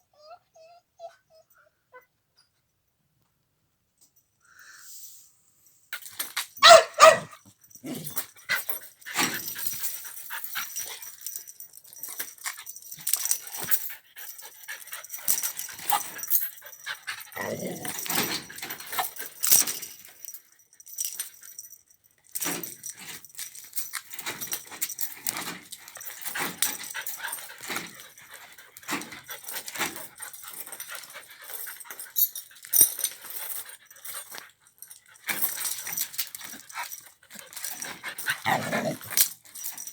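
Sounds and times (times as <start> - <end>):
dog whining and barking: 0.0 - 2.2, 6.6 - 8.2, 17.3 - 19.2, 38.2 - 39.1.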